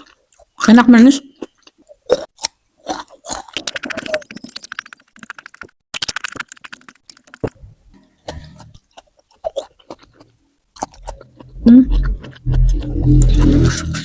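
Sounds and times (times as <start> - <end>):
crunchy chewing of vegetables: 1.3 - 4.7, 8.2 - 14.0.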